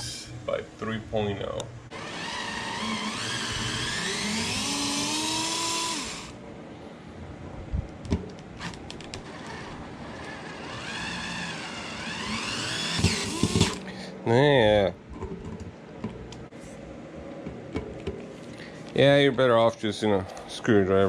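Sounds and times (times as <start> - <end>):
power screwdriver whirring: 1.9 - 6.4, 8.6 - 13.8.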